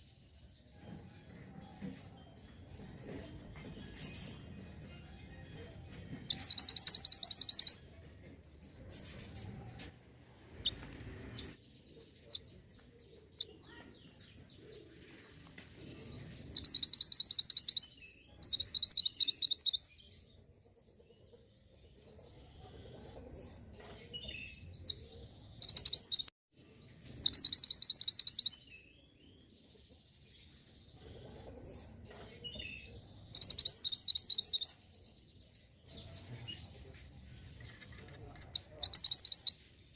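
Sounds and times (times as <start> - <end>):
soft bird chirps: 6.2 - 8.0, 8.7 - 20.4, 21.2 - 39.9
songbird trilling: 6.3 - 7.8, 16.6 - 19.9, 27.3 - 28.6, 33.4 - 34.8, 38.6 - 39.6.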